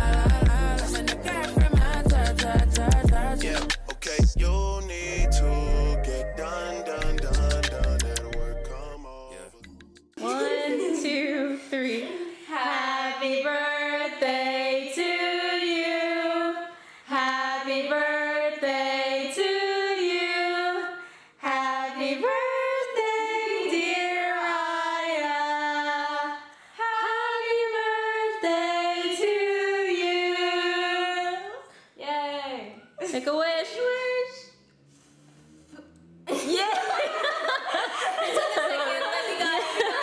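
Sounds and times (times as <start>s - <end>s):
woman singing unaccompanied: 0.0s - 3.7s, 10.2s - 31.7s.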